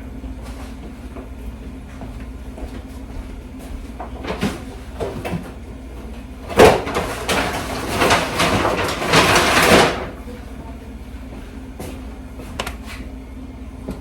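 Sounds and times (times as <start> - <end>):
rustling and clattering: 6.5 - 10.3.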